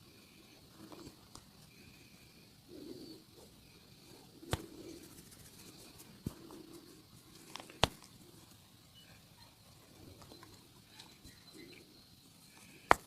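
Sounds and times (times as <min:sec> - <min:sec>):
hands massaging body: 0:04.4 - 0:08.6.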